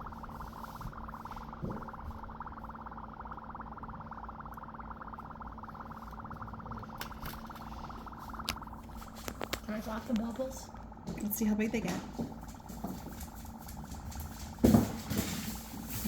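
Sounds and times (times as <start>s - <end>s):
dry ice bubbling in water: 0.0s - 12.7s.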